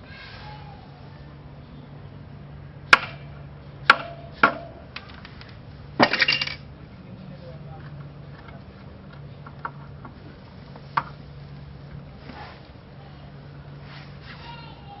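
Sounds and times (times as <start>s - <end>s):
sharp metallic knocks: 2.9s - 4.8s.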